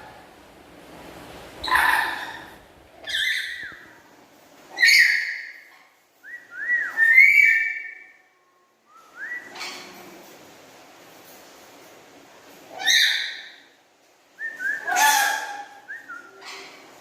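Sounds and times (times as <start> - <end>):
parrot whistling and calling: 1.6 - 4.0, 4.7 - 8.2, 9.1 - 9.9, 12.7 - 13.6, 14.4 - 16.8.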